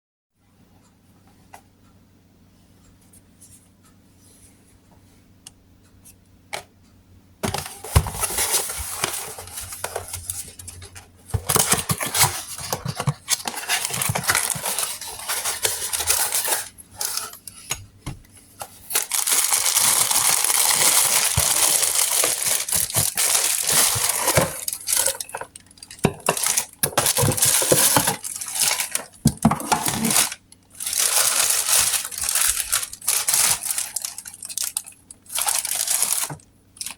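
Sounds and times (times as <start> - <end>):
packaging rustling and crinkling: 7.4 - 36.9
parts clattering: 7.4 - 36.9.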